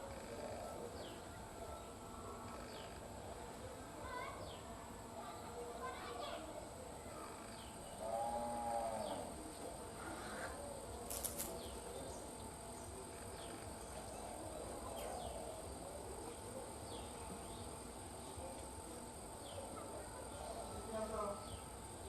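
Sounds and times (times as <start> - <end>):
small birds chirping: 7.1 - 8.2.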